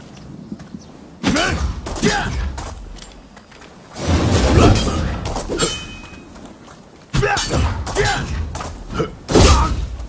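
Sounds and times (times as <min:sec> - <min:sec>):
sharp hits and crashing impacts: 0:04.0 - 0:06.2.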